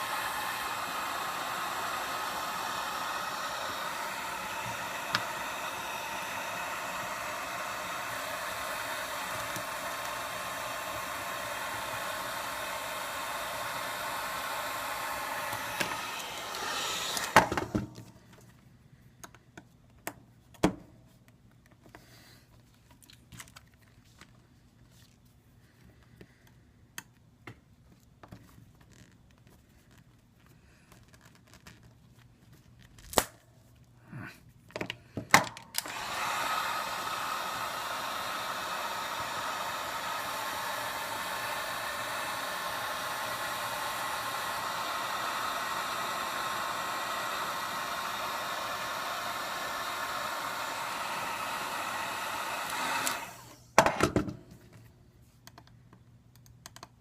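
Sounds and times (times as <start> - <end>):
heat gun blowing air: 0.0 - 17.8, 35.8 - 53.6
small clicks and taps: 55.4 - 57.0.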